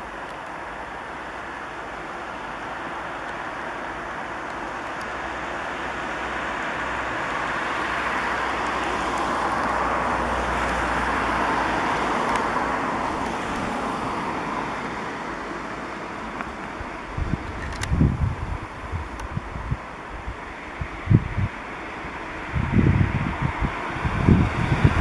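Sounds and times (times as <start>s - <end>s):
vehicle passing by: 5.8s - 16.1s.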